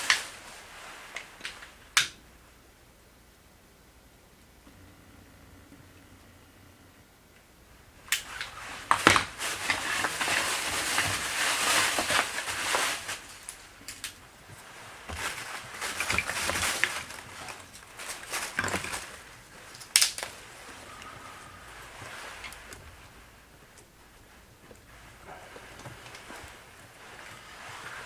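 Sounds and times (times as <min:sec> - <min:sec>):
sticks rustling and crunching: 0:08.1 - 0:28.0
sticks snapping: 0:19.7 - 0:21.1.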